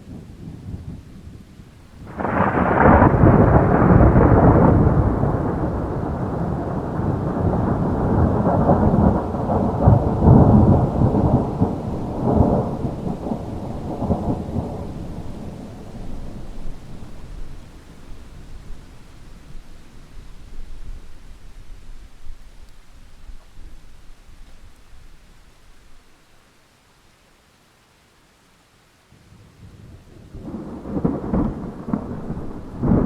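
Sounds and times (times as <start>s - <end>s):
rolling thunder rumble: 0.0s - 25.2s, 29.7s - 33.0s
steady rain: 0.0s - 33.0s
thunderclap: 0.1s - 21.4s, 30.3s - 33.0s.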